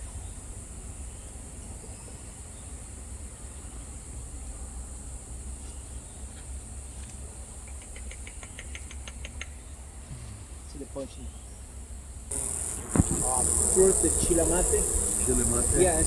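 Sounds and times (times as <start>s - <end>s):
high insect hiss: 0.0s - 16.0s
faint clicks: 7.0s - 9.6s
low rumble: 12.3s - 16.0s.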